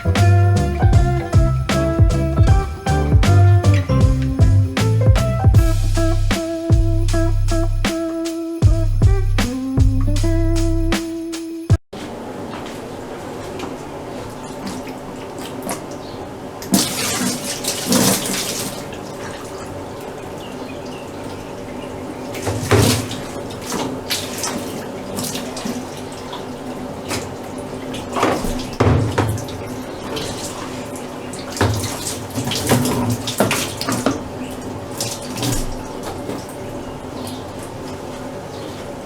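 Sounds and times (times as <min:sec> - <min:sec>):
splashing while washing: 0:00.0 - 0:06.8, 0:12.0 - 0:39.0
water running from a tap: 0:00.0 - 0:07.8, 0:13.5 - 0:39.0.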